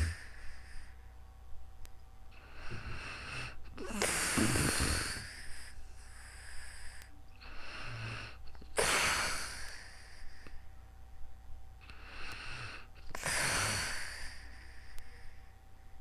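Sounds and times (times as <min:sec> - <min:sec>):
light snoring: 0:00.0 - 0:00.9, 0:02.4 - 0:10.6, 0:11.8 - 0:15.4
person breathing heavily: 0:00.0 - 0:01.1, 0:02.3 - 0:10.7, 0:11.8 - 0:15.5.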